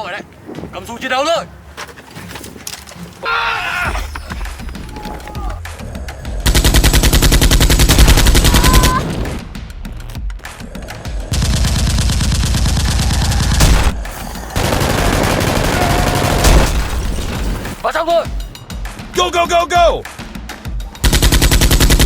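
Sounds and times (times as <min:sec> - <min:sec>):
machine gun firing bursts: 0:06.4 - 0:09.5, 0:11.3 - 0:17.8, 0:21.0 - 0:22.0.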